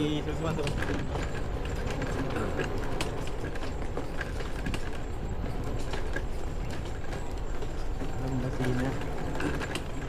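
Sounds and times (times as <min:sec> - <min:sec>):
knocks and rattles: 0:00.0 - 0:10.0.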